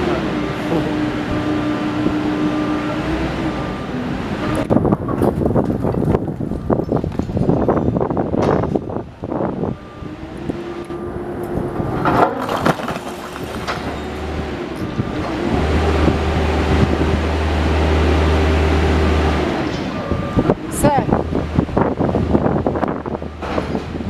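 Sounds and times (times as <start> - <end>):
demolition machine engine whine: 0.0 - 24.0
debris cracking and knocking: 11.7 - 14.5.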